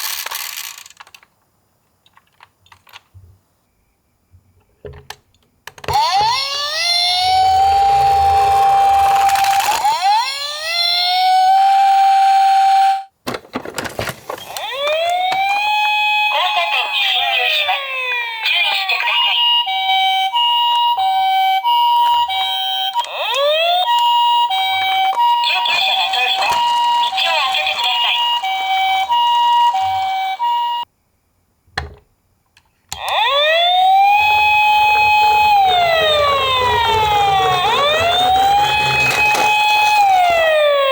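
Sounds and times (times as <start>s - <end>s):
toy siren wailing: 5.9s - 13.1s, 14.5s - 30.9s, 32.9s - 40.9s.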